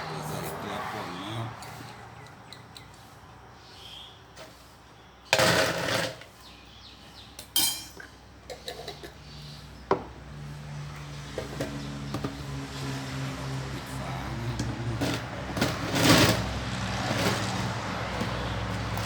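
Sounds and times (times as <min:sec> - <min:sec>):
spoon clinking on glass: 0:07.5 - 0:08.1
spoon scraping in container: 0:08.5 - 0:09.2.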